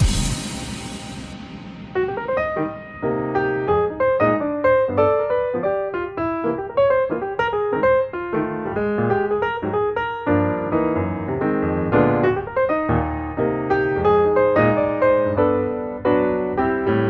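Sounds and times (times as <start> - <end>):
piano melody over chords: 0.0 - 17.0.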